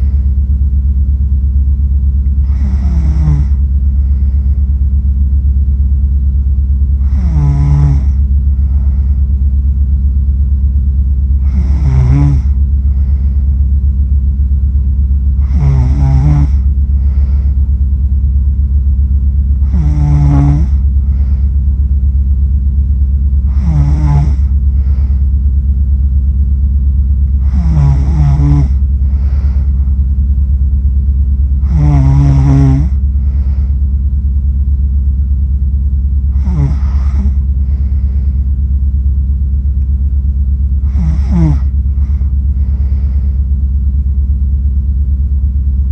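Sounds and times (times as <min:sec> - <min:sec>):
person snoring: 0:00.0 - 0:00.2, 0:02.4 - 0:04.6, 0:07.0 - 0:09.2, 0:11.4 - 0:13.4, 0:15.4 - 0:17.6, 0:19.6 - 0:21.5, 0:23.4 - 0:25.3, 0:27.4 - 0:30.0, 0:31.6 - 0:33.8, 0:36.3 - 0:38.4, 0:40.8 - 0:43.4
steady low hum: 0:00.0 - 0:45.9.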